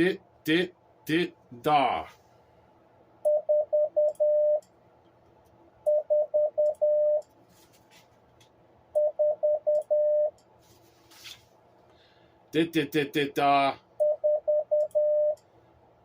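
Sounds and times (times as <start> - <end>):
morse code beeping tone: 3.3 - 4.6, 5.9 - 7.2, 9.0 - 10.3, 14.0 - 15.4.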